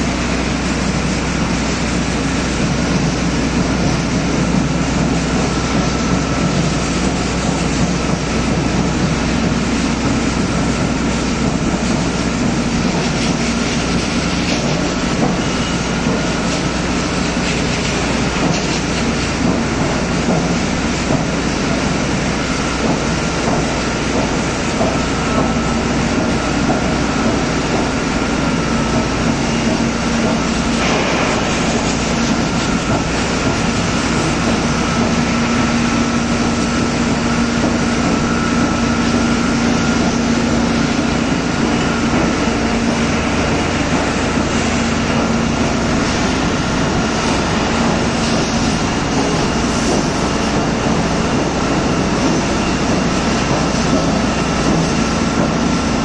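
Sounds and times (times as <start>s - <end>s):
heavy machinery rumbling: 0.0s - 56.0s.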